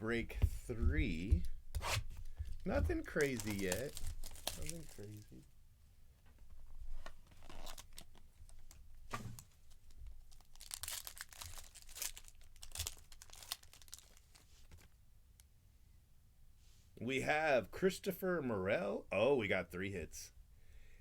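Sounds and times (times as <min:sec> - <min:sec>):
wrapper tearing and crinkling: 0:03.0 - 0:05.2, 0:07.4 - 0:08.8, 0:09.7 - 0:14.9.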